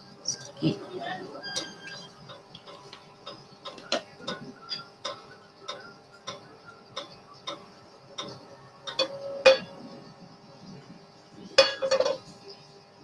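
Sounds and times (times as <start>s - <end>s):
hot oil ticking and popping: 2.1s - 9.1s.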